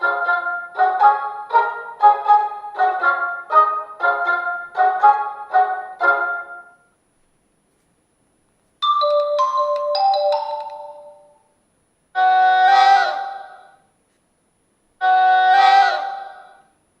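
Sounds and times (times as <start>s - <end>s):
bright alert tone: 8.8s - 11.4s.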